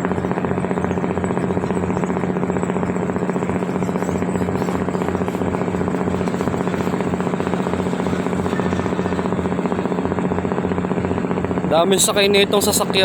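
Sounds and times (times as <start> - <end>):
ship diesel engine droning: 0.0 - 13.0.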